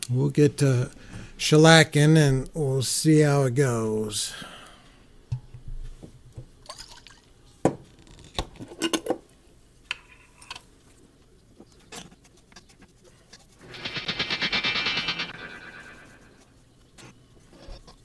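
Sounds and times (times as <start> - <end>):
rattle of fast taps: 13.6 - 16.4.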